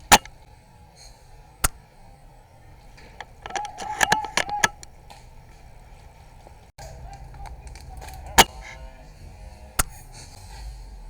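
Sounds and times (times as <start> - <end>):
airsoft gun shots: 0.0 - 1.9, 2.6 - 6.0, 8.2 - 8.7.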